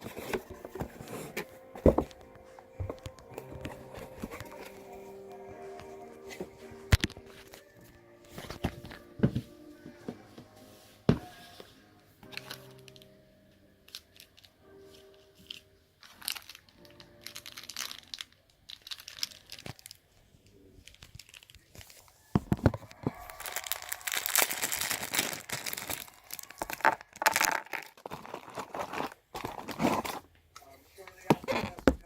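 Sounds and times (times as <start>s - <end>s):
packaging crinkling and tearing: 15.4s - 30.3s.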